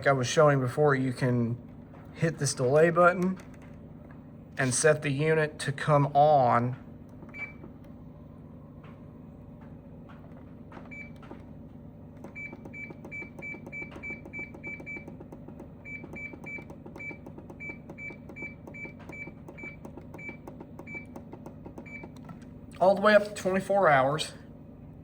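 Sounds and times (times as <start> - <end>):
air conditioner control panel beeps: 6.7 - 9.0, 9.6 - 23.3.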